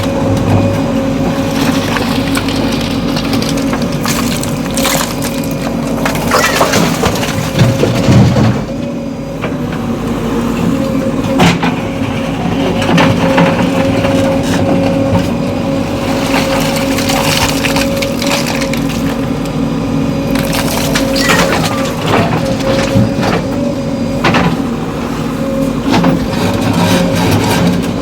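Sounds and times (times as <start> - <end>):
diesel engine running under load: 0.0 - 28.0
bucket crunching soil: 1.3 - 8.3, 15.3 - 19.6, 20.2 - 23.2.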